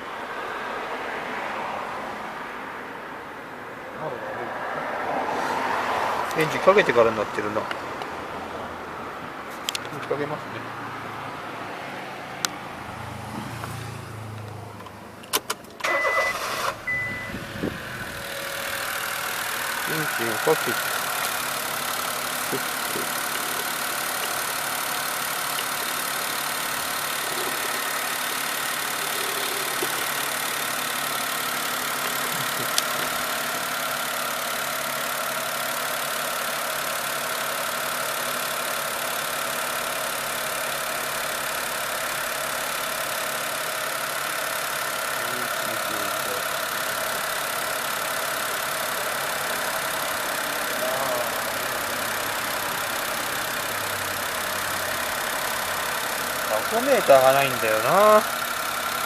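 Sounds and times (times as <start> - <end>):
car engine idling: 0.0 - 59.0.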